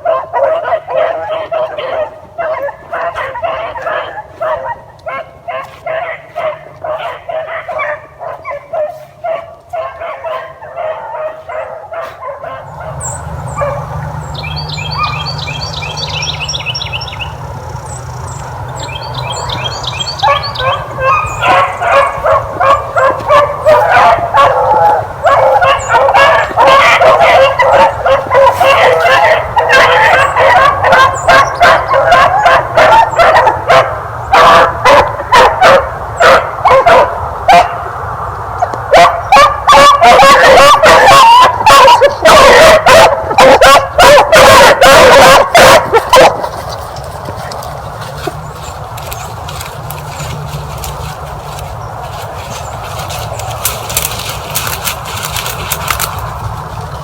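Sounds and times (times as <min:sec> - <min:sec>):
dogs baying: 0:00.0 - 0:38.0, 0:38.6 - 0:57.0
bird chirping rapidly: 0:12.7 - 0:24.1.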